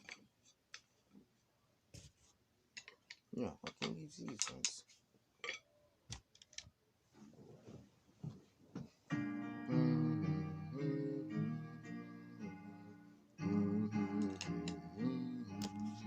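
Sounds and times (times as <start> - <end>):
guitar chords: 9.1 - 16.0.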